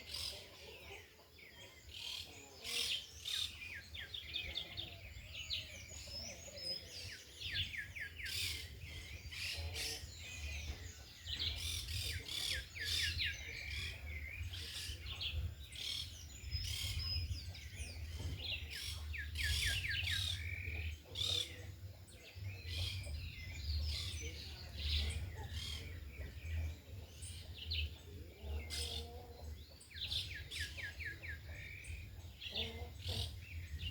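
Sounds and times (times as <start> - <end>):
small birds chirping: 0.0 - 33.9
wind rumble on microphone: 7.0 - 20.9, 21.7 - 28.6, 30.1 - 33.9.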